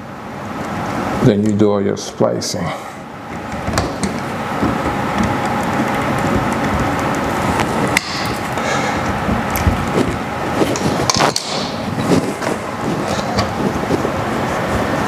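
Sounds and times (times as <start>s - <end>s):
steady background hiss: 0.0s - 15.0s
electrical wires clicking and scraping: 3.2s - 15.0s.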